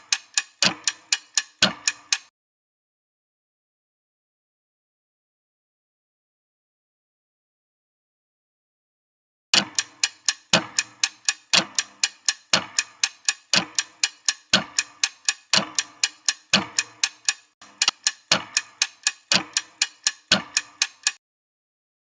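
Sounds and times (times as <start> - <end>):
clock ticking: 0.0 - 2.3, 9.6 - 21.2.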